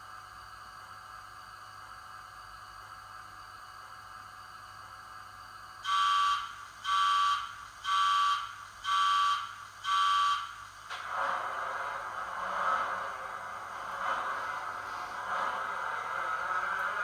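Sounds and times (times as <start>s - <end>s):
diesel engine starting up: 10.9s - 17.0s.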